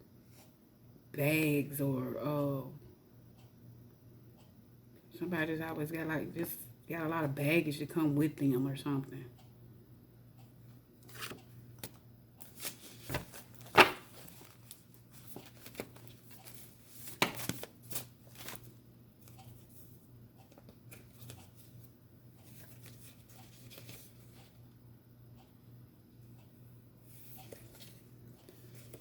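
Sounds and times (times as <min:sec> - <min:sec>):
cards being shuffled: 0:11.0 - 0:18.7, 0:22.5 - 0:24.5.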